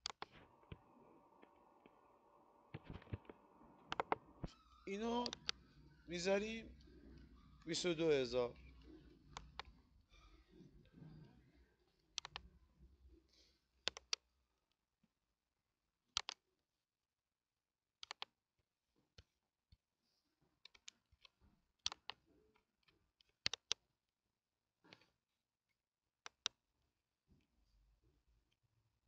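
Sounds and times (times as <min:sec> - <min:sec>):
mouse and keyboard clicks: 0:00.0 - 0:00.8, 0:02.7 - 0:05.8, 0:08.7 - 0:09.8, 0:12.2 - 0:12.4, 0:13.8 - 0:14.2, 0:16.2 - 0:16.4, 0:18.0 - 0:18.3, 0:20.7 - 0:22.2, 0:23.2 - 0:23.8, 0:26.2 - 0:26.6.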